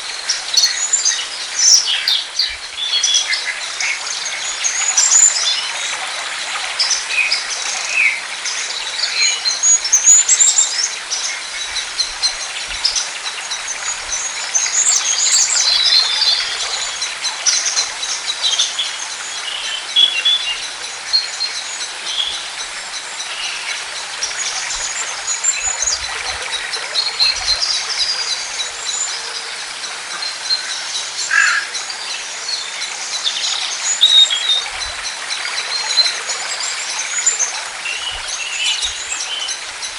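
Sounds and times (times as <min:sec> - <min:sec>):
outdoor background hiss: 0:00.0 - 0:39.9
birds chirping and singing: 0:09.0 - 0:39.9.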